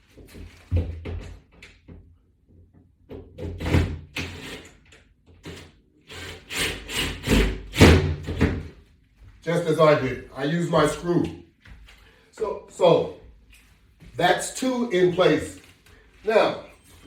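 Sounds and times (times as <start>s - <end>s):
screwdriver working screws: 4.2s - 7.8s.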